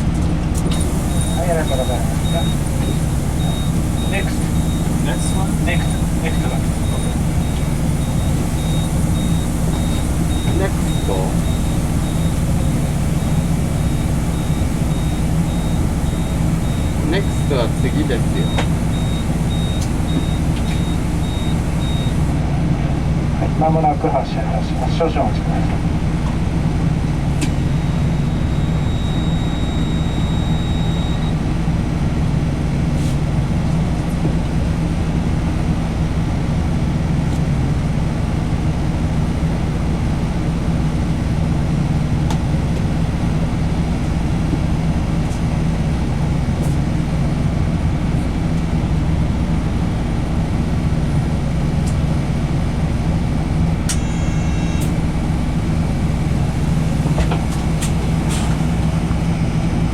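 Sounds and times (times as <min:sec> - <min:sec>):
bus engine drone: 0:00.0 - 0:59.9
road noise: 0:00.0 - 0:59.9.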